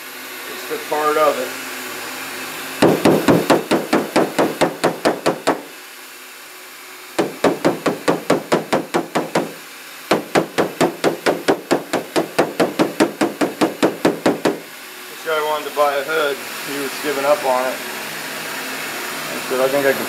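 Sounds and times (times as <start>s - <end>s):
hammer tapping on metal panel: 2.8s - 5.7s, 7.2s - 14.6s.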